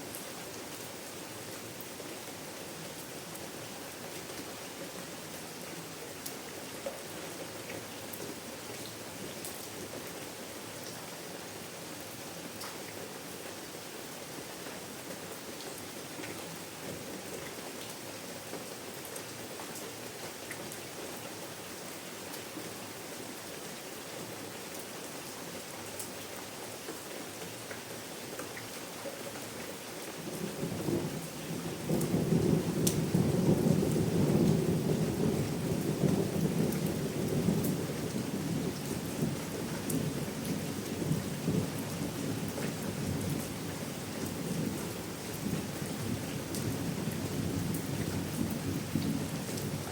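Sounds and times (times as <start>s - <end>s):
steady rain hiss: 0.0s - 49.9s
low rolling thunder: 31.8s - 39.3s.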